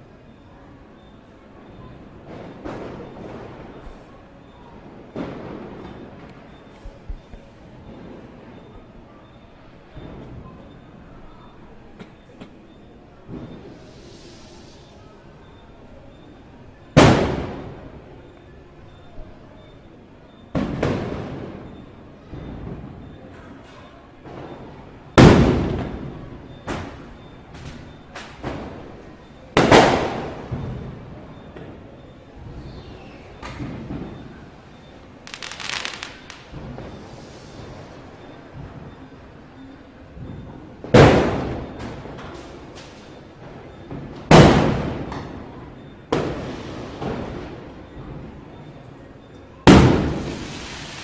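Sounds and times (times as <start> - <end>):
firecrackers bursting with echo: 1.6 - 8.8, 9.8 - 10.8, 12.8 - 14.9, 17.0 - 18.4, 20.5 - 23.3, 24.2 - 39.2, 40.2 - 48.9, 49.6 - 51.0
firecracker bangs: 5.1 - 6.0, 17.0 - 17.8, 20.6 - 21.7, 25.2 - 26.1, 29.6 - 31.0, 35.2 - 37.8, 40.9 - 42.1, 44.3 - 45.2, 49.7 - 51.0.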